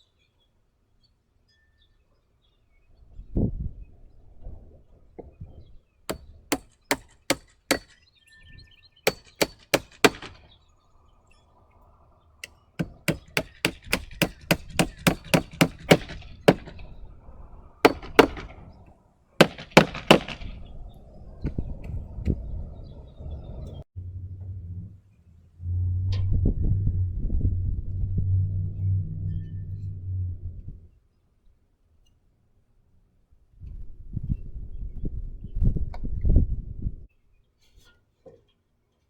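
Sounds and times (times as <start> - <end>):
hammer driving nails into wood: 6.1 - 8.0, 9.1 - 10.4, 12.4 - 16.8, 17.9 - 18.6, 19.4 - 20.6.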